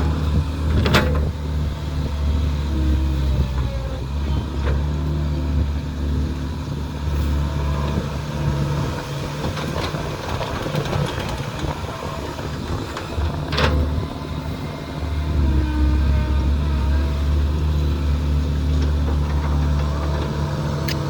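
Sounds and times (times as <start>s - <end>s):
heavy machinery diesel engine: 0.0s - 21.0s
machinery clatter: 7.7s - 21.0s.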